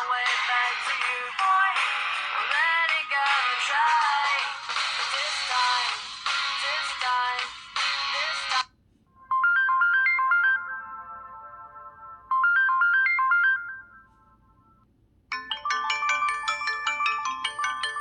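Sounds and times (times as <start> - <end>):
busier ringtone melody: 9.2 - 18.0
phone ringtone melody: 9.2 - 18.0.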